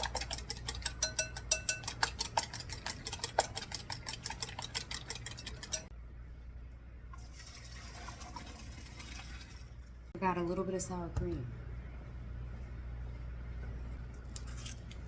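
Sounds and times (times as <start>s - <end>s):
whisk clicking against bowl: 0.0s - 5.9s.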